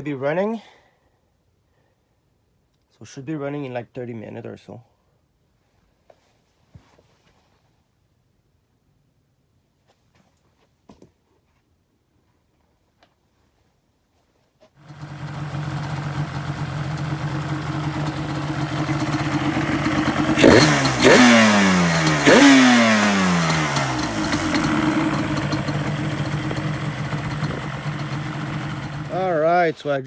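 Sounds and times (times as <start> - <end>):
engine revving: 14.8 - 29.5
two-stroke engine idling: 14.8 - 29.5.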